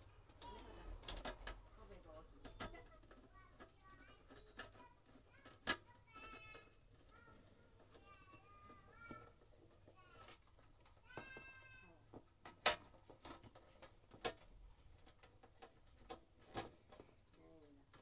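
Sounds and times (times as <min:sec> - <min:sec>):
plastic and metal parts clicking: 0:00.3 - 0:01.6, 0:02.4 - 0:08.4.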